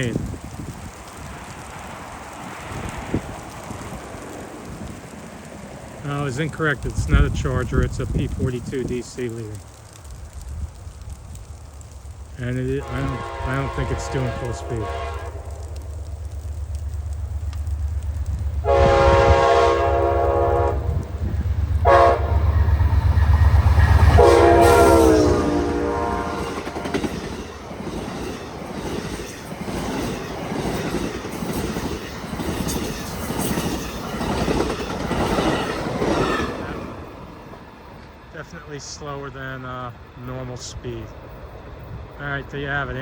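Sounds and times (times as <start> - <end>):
diesel engine rumble: 0.0 - 28.8
locomotive horn blasts: 12.8 - 15.5, 18.6 - 21.0, 21.8 - 22.5, 24.1 - 26.9
train wheels clacking on rail joints: 20.9 - 37.4.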